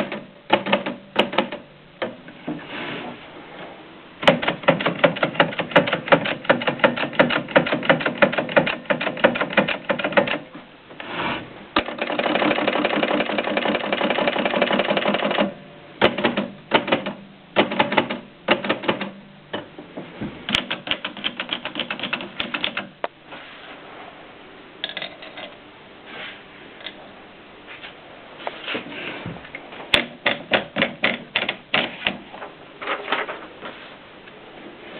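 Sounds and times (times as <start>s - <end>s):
typewriter clicking and rattling: 0.0s - 1.6s, 4.2s - 10.5s, 11.8s - 19.2s, 20.5s - 23.0s, 30.0s - 32.2s.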